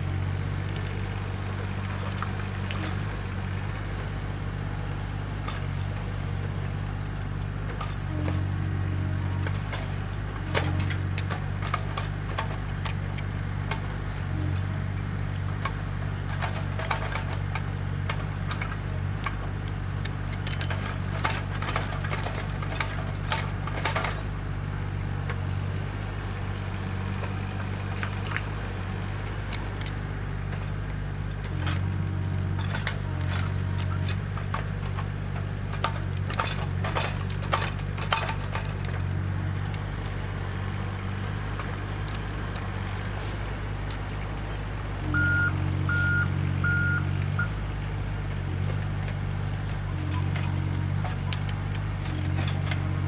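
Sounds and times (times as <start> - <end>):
heavy vehicle engine running: 0.0 - 53.0.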